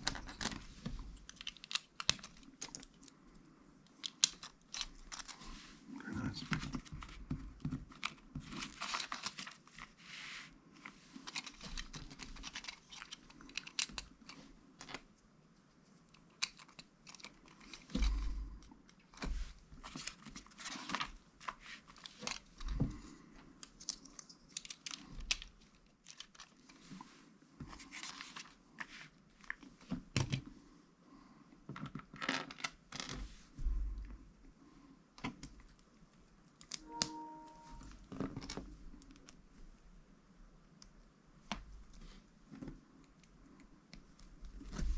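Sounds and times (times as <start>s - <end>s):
plastic bricks clicking together: 3.9s - 5.4s, 11.3s - 15.0s.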